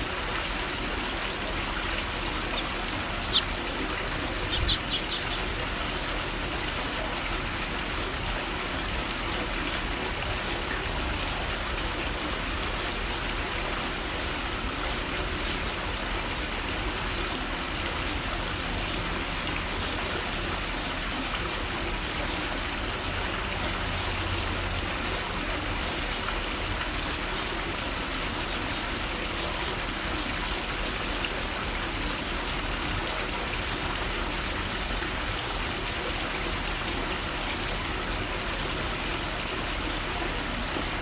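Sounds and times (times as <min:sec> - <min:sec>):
outdoor noise: 0:00.0 - 0:41.0
small birds chirping: 0:02.3 - 0:05.6.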